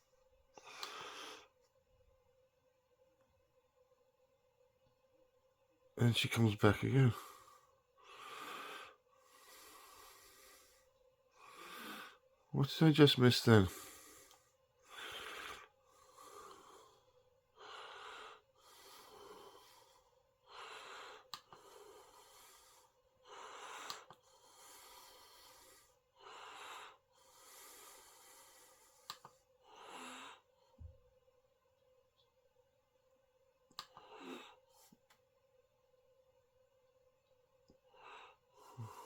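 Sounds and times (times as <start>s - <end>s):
person breathing close to microphone: 7.2s - 12.2s, 13.5s - 30.8s, 37.9s - 39.0s.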